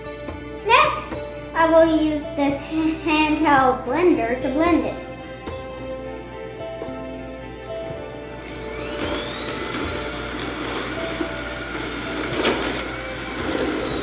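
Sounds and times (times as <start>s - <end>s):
immersion blender motor whine: 7.6s - 14.0s.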